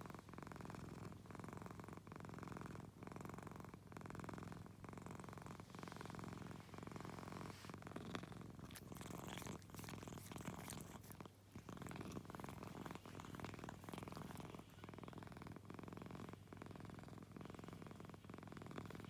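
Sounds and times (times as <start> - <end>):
cat purring: 0.0 - 19.0.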